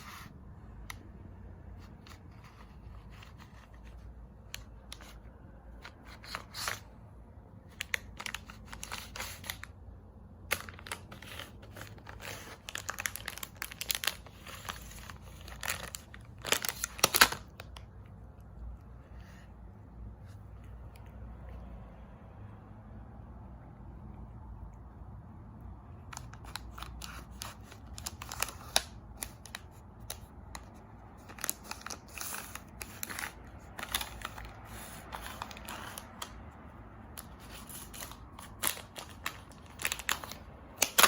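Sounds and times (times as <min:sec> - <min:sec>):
cat crinkling and scratching: 0:00.0 - 0:21.6, 0:25.8 - 0:41.0.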